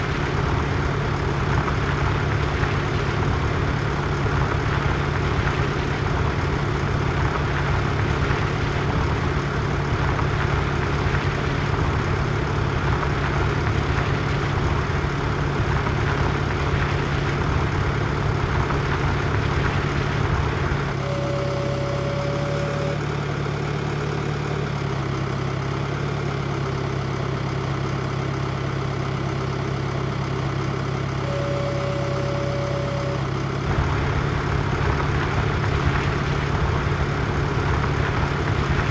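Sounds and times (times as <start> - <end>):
tractor engine running: 0.0 - 38.9
short high whine: 21.0 - 23.1, 31.2 - 34.1.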